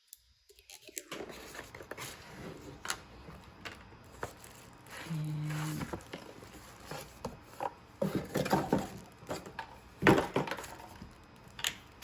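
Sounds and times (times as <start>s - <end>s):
hard objects knocking and clattering: 5.7s - 11.1s.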